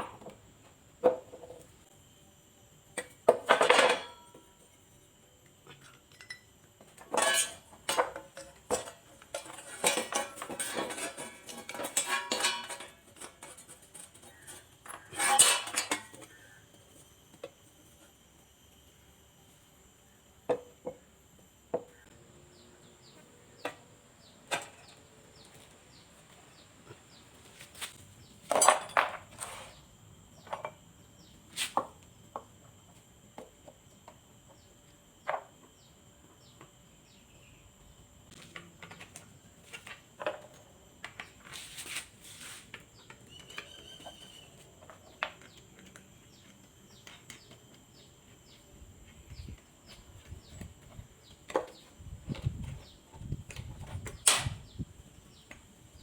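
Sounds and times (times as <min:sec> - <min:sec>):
metal clatter: 0:07.0 - 0:14.3, 0:14.9 - 0:16.2.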